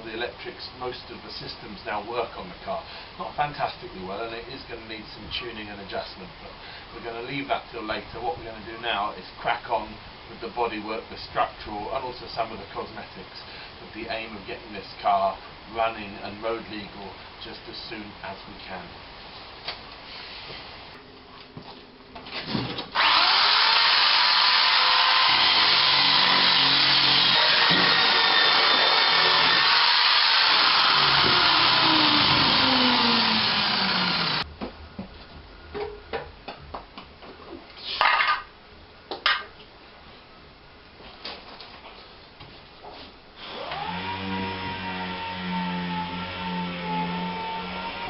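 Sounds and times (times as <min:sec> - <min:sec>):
power tool on metal: 0:22.9 - 0:34.4, 0:43.4 - 0:48.0.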